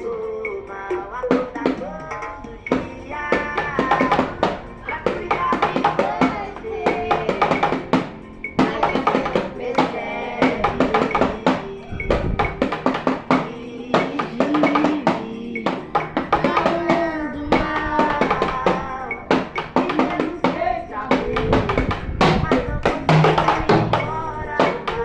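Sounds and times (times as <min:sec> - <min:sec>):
drum kit beat: 0:00.0 - 0:25.0
song with melody: 0:00.0 - 0:25.0.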